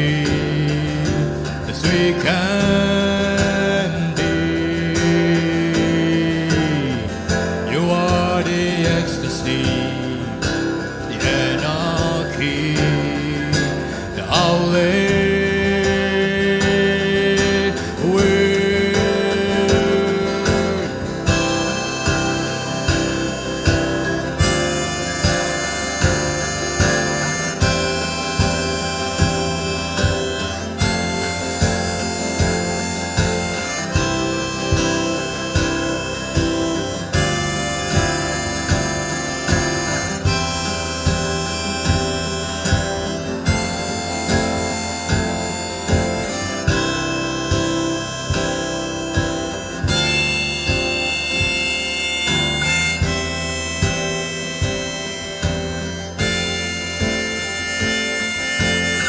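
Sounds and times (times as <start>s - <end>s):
person singing long notes: 0.0s - 40.6s
strummed acoustic guitar: 0.0s - 59.0s.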